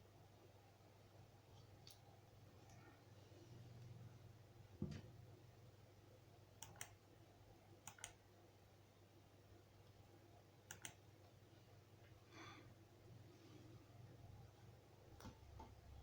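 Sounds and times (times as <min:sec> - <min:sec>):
low steady hum: 0:00.0 - 0:16.0
sharp clicks: 0:07.8 - 0:08.2, 0:10.7 - 0:11.0.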